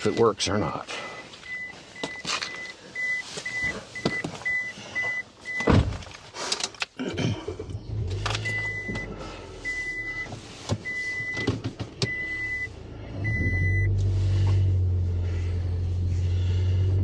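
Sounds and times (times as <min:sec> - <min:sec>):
car warning chime beeping: 0:00.0 - 0:05.7, 0:08.4 - 0:14.0
car engine starting and idling: 0:00.0 - 0:17.0
car door thumping shut: 0:05.6 - 0:06.0.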